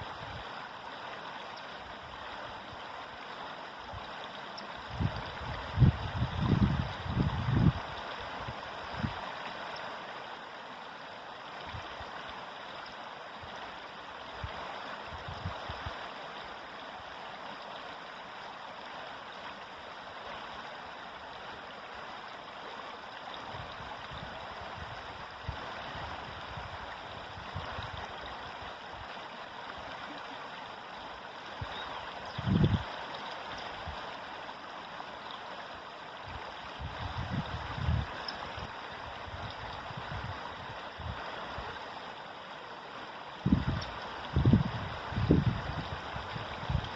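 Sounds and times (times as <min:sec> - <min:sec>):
river water rushing over stones: 0:00.0 - 0:46.9.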